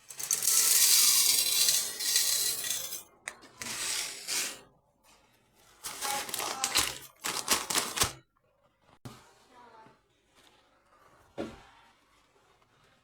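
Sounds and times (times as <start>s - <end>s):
salt rattling in blender jar: 0.0s - 4.5s, 5.8s - 8.2s.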